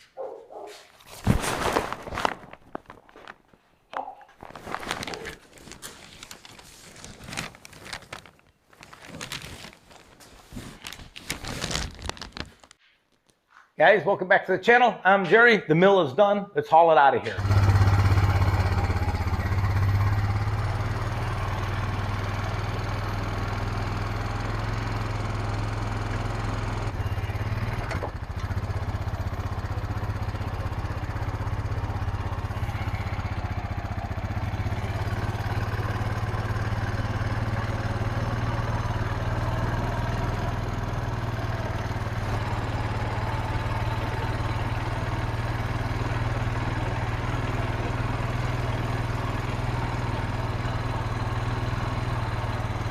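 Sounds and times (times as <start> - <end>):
tractor engine running: 17.3 - 52.9.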